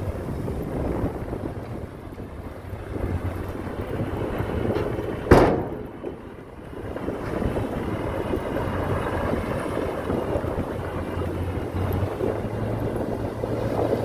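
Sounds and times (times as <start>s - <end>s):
construction machinery rumble: 0.0s - 14.0s
loud bang: 4.8s - 6.6s.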